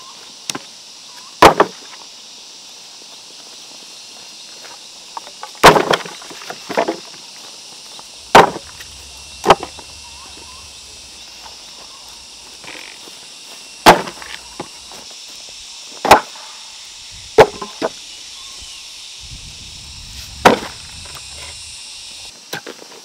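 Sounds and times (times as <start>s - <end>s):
steady high hiss: 0.0s - 23.0s
sharp chopping blows: 5.6s - 6.1s, 8.2s - 12.2s, 13.8s - 14.8s, 17.3s - 18.0s, 20.2s - 21.6s.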